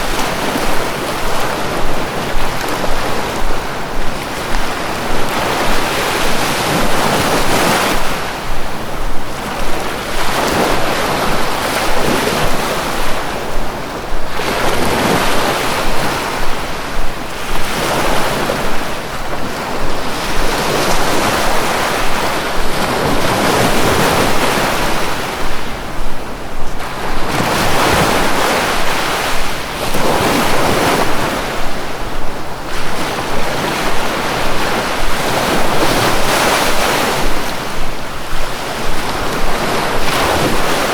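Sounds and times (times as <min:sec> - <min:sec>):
sea waves breaking on shore: 0:00.0 - 0:40.9.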